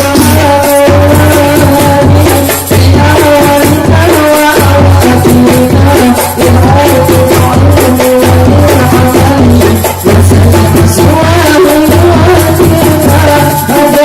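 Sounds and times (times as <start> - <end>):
frame drums: 0.0 - 14.0
jingling percussion: 0.0 - 14.0
person singing melody: 0.0 - 14.0.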